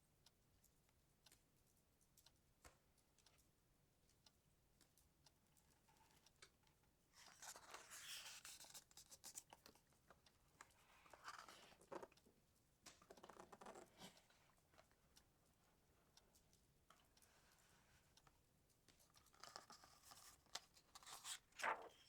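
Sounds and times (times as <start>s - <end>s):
book pages rustling: 7.2s - 9.8s, 10.6s - 12.2s, 12.9s - 14.9s, 19.0s - 22.0s.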